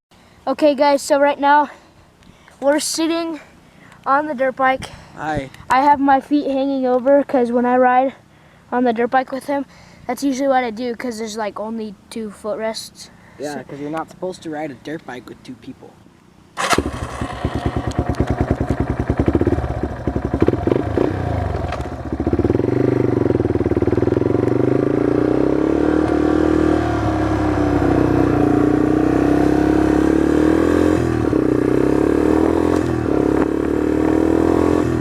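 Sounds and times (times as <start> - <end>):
dirt bike engine: 16.6 - 35.0.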